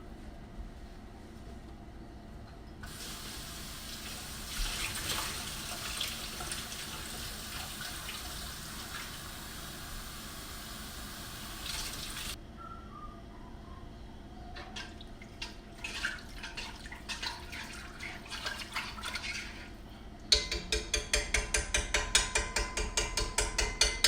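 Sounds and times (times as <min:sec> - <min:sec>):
water pouring into a pot: 0:02.8 - 0:12.4.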